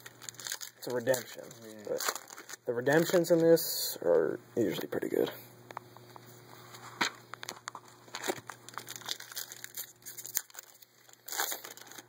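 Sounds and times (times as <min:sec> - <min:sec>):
card pack wrapper crinkling: 0:00.0 - 0:03.6, 0:07.4 - 0:12.0.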